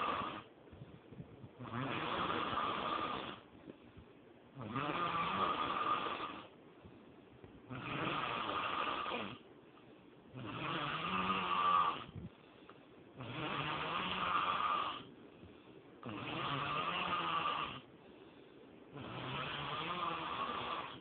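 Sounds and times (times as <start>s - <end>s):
person snoring: 0.0s - 0.5s, 1.6s - 3.4s, 4.6s - 6.5s, 7.7s - 9.4s, 10.3s - 12.2s, 13.2s - 15.1s, 16.0s - 17.9s, 18.9s - 21.0s
quiet breathing: 0.0s - 4.7s, 5.3s - 21.0s.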